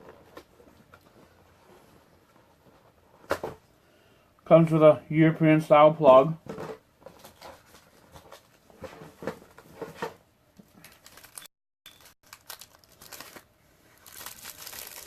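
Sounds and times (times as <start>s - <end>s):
plastic packaging crinkling: 10.8s - 15.0s.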